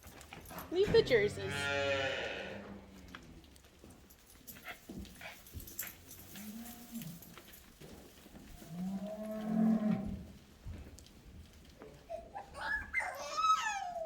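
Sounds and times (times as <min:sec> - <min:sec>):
cattle mooing: 0:08.7 - 0:10.1.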